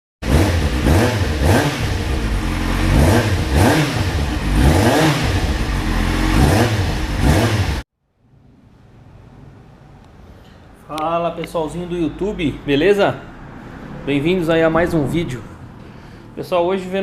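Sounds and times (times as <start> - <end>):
motorcycle engine revving: 0.2 - 7.8.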